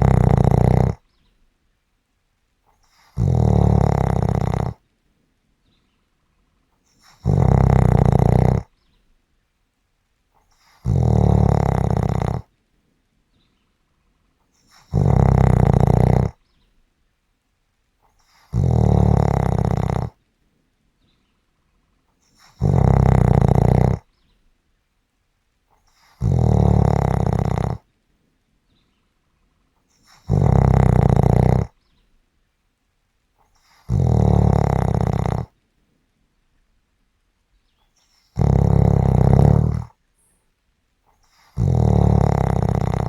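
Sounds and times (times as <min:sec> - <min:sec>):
person snoring: 0:00.0 - 0:01.0, 0:02.9 - 0:04.8, 0:07.0 - 0:08.7, 0:10.6 - 0:12.5, 0:14.7 - 0:16.4, 0:18.3 - 0:20.2, 0:22.4 - 0:24.1, 0:26.0 - 0:27.8, 0:30.1 - 0:31.8, 0:33.7 - 0:35.5, 0:38.4 - 0:40.0, 0:41.4 - 0:43.0.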